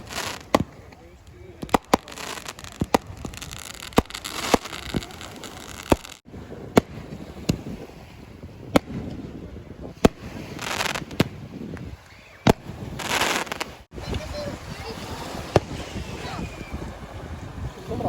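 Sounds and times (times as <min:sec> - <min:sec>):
fireworks hissing: 0:00.0 - 0:01.0, 0:01.6 - 0:07.8, 0:09.9 - 0:11.4, 0:12.2 - 0:16.8
fireworks bangs: 0:00.0 - 0:16.7.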